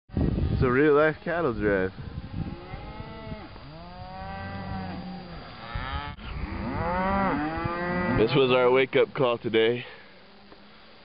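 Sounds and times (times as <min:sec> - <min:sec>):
cattle mooing: 0:02.3 - 0:08.4.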